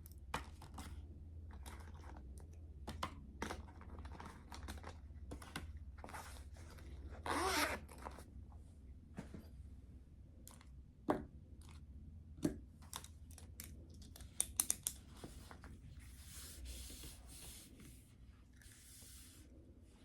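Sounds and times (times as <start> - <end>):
soft rustle: 15.0 - 20.0.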